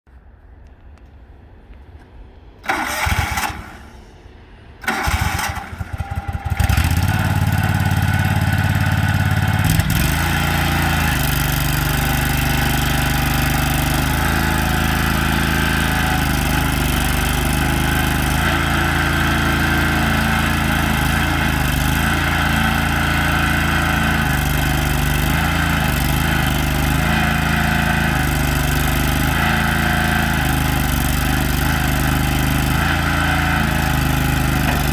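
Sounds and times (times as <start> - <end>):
engine starter cranking: 2.6 - 4.2, 4.8 - 10.8
backhoe engine running: 2.6 - 34.9.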